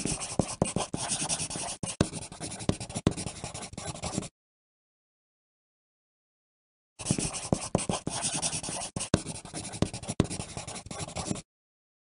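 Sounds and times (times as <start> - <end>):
pencil scratching on paper: 0.0 - 4.3, 7.0 - 11.4.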